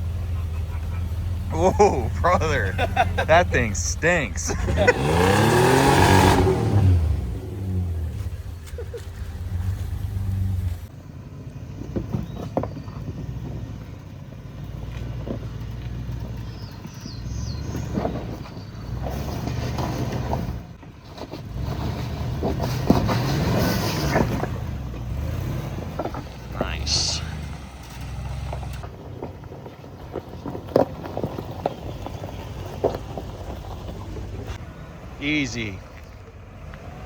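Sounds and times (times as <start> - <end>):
engine running at low revs: 0.0 - 20.8, 21.4 - 29.1
tires crunching on rock: 0.0 - 37.0.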